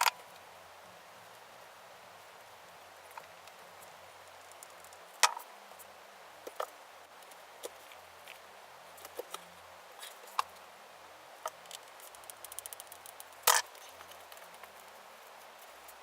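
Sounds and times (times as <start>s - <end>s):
light clicks and taps: 11.4s - 16.0s.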